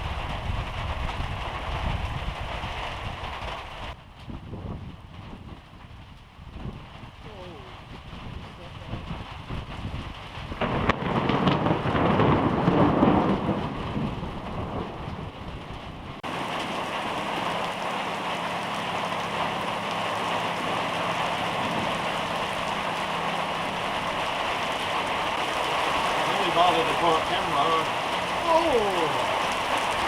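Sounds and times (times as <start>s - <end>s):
thunder crack and rumble: 0.0s - 30.0s
heavy rain hissing: 6.6s - 30.0s.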